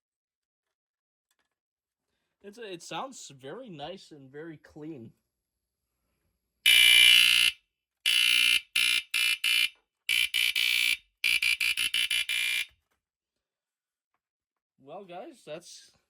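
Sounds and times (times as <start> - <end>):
smoke alarm beeping: 6.7 - 12.7.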